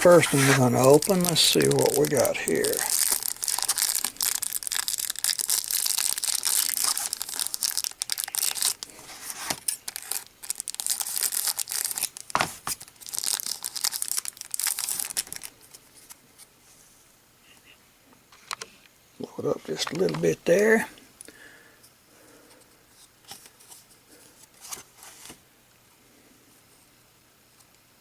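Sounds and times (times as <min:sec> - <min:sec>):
wrapper tearing and crinkling: 0:00.0 - 0:15.6.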